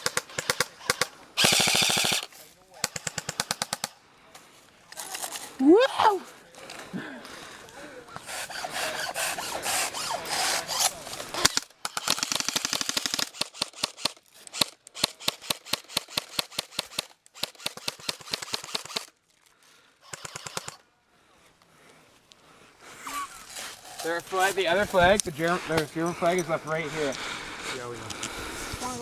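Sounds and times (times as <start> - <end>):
airsoft gun rapid firing: 0.0 - 4.0, 8.7 - 19.1, 20.0 - 20.8.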